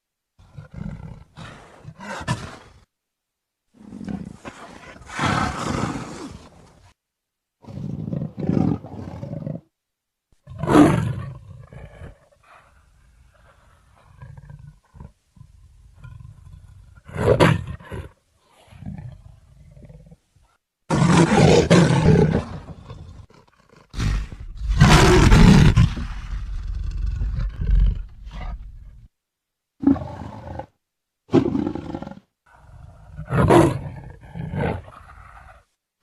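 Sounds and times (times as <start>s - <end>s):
leopard roaring: 3.8s - 6.6s, 10.5s - 15.2s, 20.9s - 29.1s, 29.8s - 35.6s.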